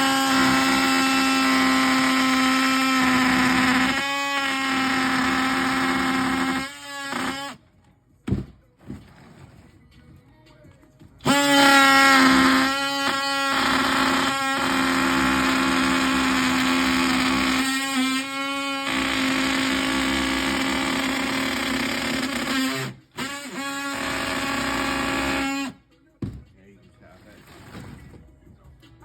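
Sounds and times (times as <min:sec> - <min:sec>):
oscillating multi-tool buzzing: 0:00.0 - 0:07.6, 0:11.2 - 0:25.8.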